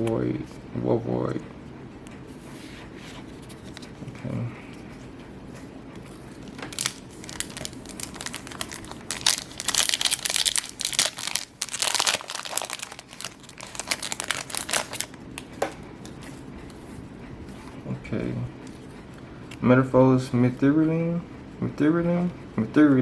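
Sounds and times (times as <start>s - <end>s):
foil wrapper crinkling and tearing: 6.5s - 15.2s.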